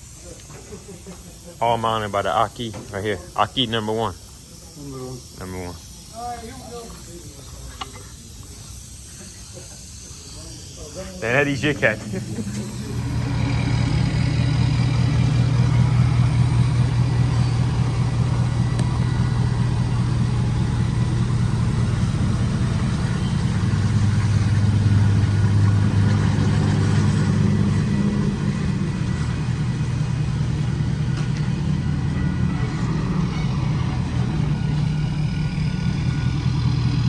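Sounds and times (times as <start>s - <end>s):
pickup engine running at low revs: 11.7s - 37.0s.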